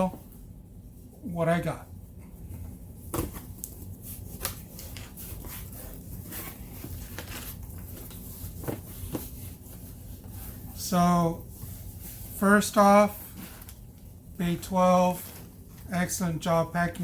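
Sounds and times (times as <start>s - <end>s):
packing paper rustling: 3.2s - 10.6s.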